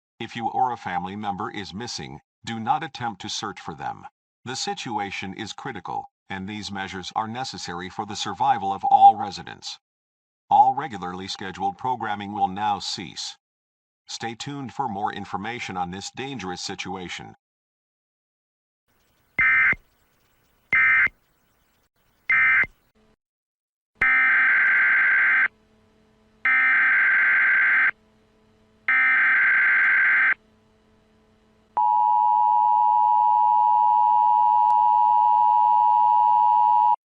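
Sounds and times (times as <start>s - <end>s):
digital data bursts: 19.1s - 22.7s.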